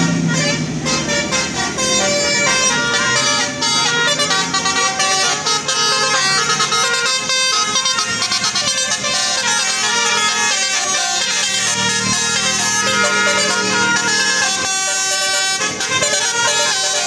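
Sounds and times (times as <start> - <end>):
multi-tone air horn melody: 0.0 - 17.0.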